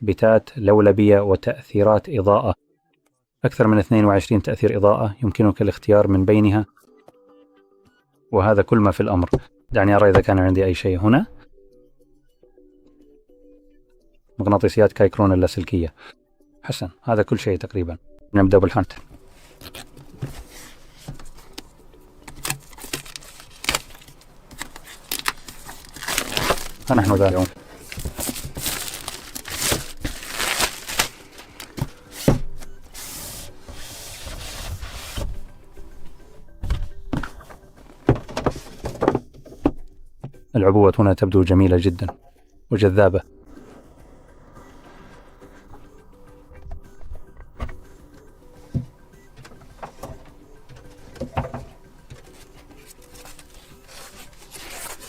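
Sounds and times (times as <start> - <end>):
cardboard rustling: 19.0 - 35.6, 45.4 - 55.0
packaging crinkling and tearing: 22.2 - 32.2.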